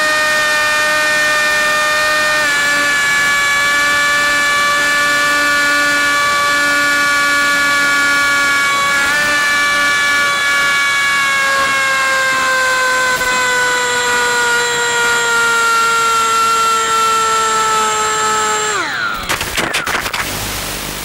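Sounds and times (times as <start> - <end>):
electric motor and propeller whining: 0.0 - 21.0
static crackling: 19.2 - 21.0.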